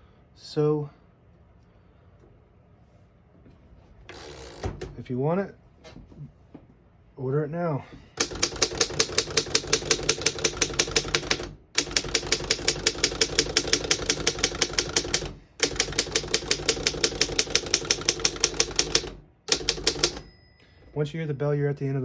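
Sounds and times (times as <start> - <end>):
manual typewriter clattering: 8.2 - 20.3.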